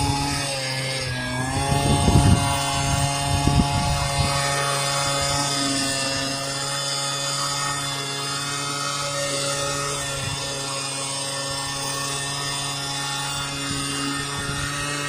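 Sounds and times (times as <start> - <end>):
gas leaf blower running: 0.0 - 15.0
rumbling gusts of air: 1.1 - 5.5.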